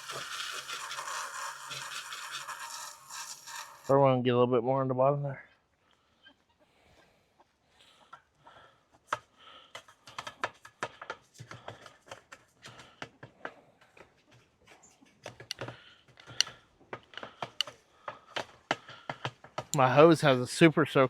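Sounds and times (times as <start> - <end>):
brush scrubbing plastic: 0.0 - 3.9.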